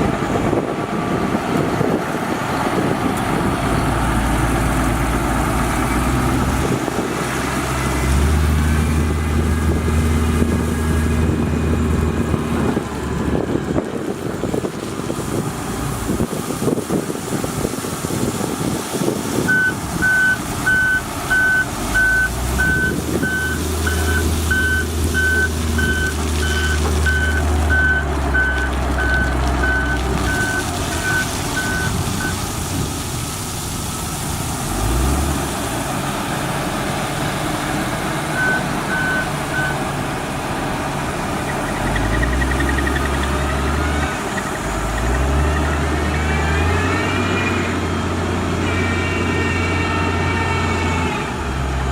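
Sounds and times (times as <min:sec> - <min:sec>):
heavy machine engine running: 0:00.0 - 0:51.9
reversing alarm beeping: 0:19.5 - 0:32.4, 0:38.4 - 0:39.8.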